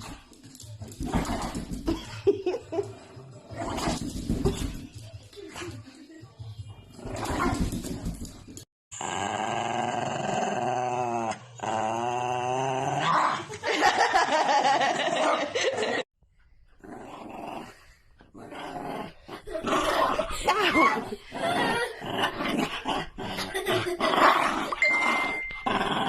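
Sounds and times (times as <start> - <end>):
dog growling: 9.0 - 13.5, 16.8 - 24.8.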